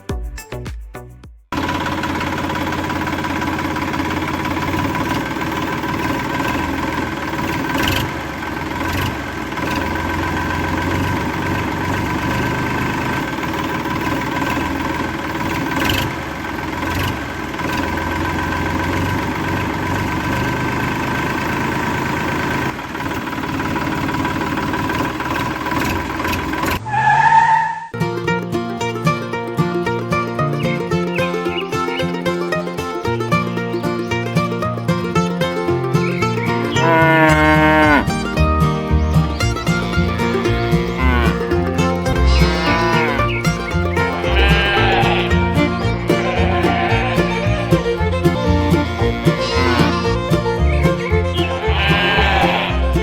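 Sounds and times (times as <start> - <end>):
small motor whining: 1.6 - 26.8, 39.4 - 53.0.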